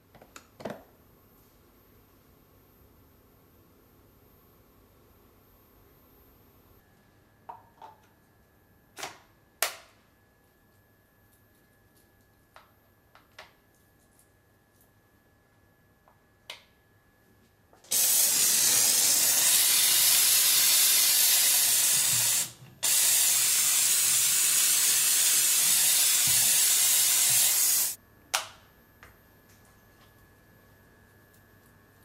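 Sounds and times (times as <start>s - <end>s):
steam cleaner click: 17.9s - 28.0s
steam cleaner hissing: 17.9s - 28.0s.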